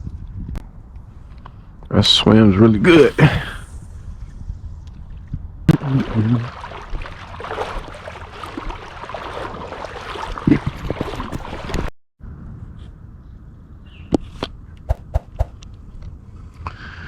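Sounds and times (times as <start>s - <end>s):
wind buffeting microphone: 2.9s - 11.9s
water swishing around waders: 5.1s - 11.9s.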